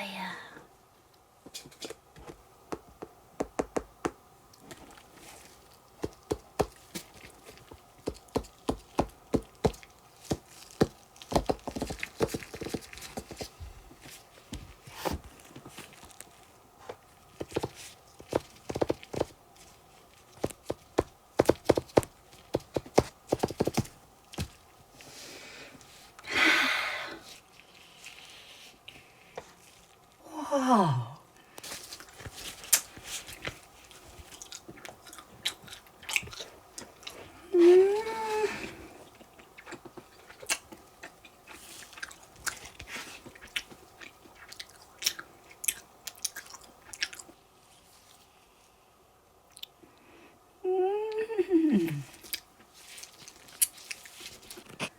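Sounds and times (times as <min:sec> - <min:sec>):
chewing with wet mouth clicks: 0:34.3 - 0:37.2, 0:39.2 - 0:47.4.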